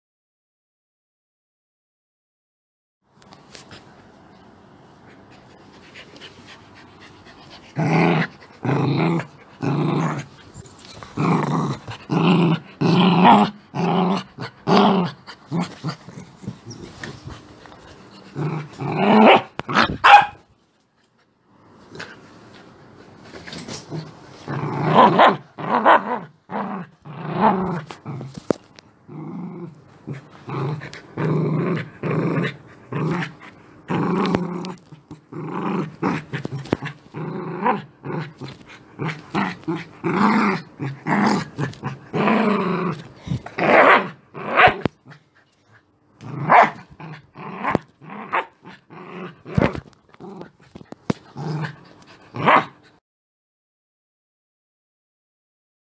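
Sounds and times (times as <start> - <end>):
dog growling: 7.5 - 16.8, 18.2 - 20.0, 23.8 - 28.4, 29.1 - 45.2, 46.2 - 52.8
dog barking: 19.3 - 20.4, 46.5 - 46.8.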